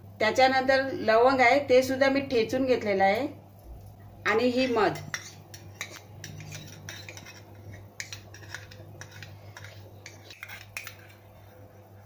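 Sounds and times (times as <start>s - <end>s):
spoon clinking against pot: 4.6s - 11.2s.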